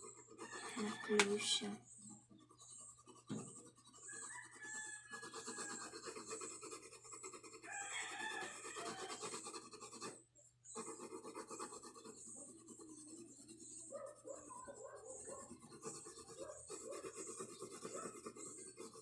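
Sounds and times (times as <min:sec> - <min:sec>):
colour pencil rasping on paper: 0:00.0 - 0:19.0.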